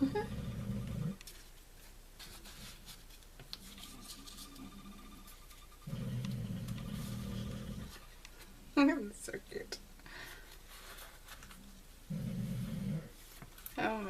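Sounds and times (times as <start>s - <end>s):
paper pages rustling: 1.2s - 4.7s, 10.3s - 11.7s.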